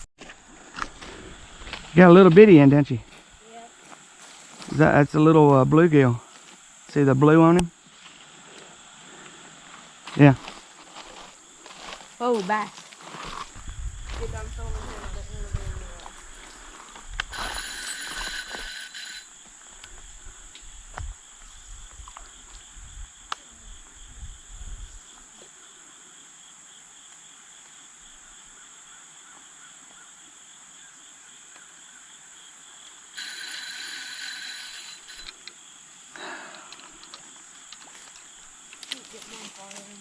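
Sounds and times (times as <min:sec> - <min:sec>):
insect drone: 0:00.2 - 0:40.0
bursts of hiss: 0:17.3 - 0:19.3, 0:33.2 - 0:35.4.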